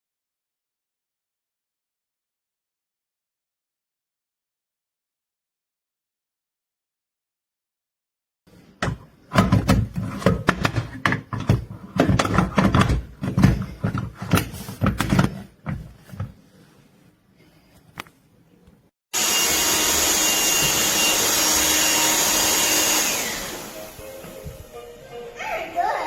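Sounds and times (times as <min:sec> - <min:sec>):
irregular knocks and clatter: 0:08.8 - 0:16.4
handheld vacuum whining: 0:19.1 - 0:25.0.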